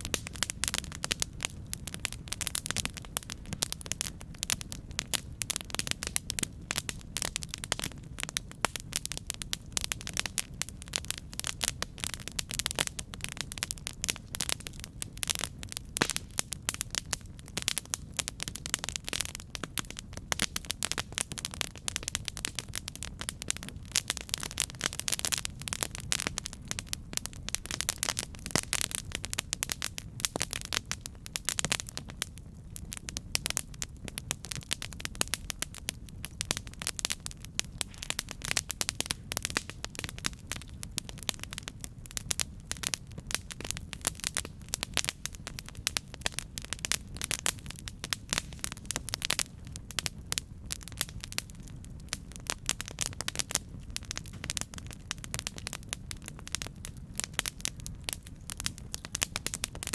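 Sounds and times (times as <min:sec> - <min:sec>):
campfire crackling: 0:00.0 - 0:59.9.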